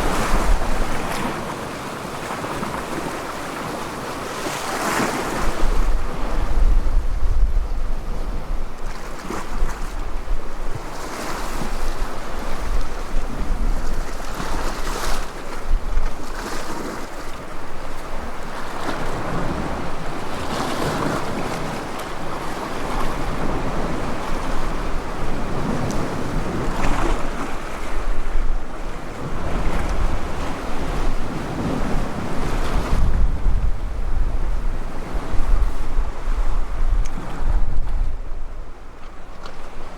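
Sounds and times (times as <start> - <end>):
wind buffeting microphone: 0.0 - 1.3, 5.4 - 10.9, 19.0 - 39.8
sea waves washing in: 0.0 - 6.8.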